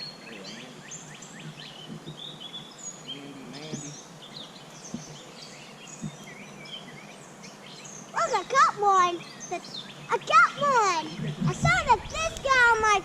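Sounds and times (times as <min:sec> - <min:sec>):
outdoor background noise: 0:00.0 - 0:13.0
songbirds chirping and whistling: 0:00.0 - 0:13.0.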